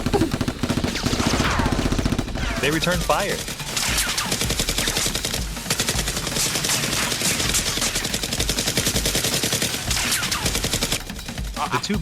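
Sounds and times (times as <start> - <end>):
rapid automatic gunfire: 0.0 - 11.7.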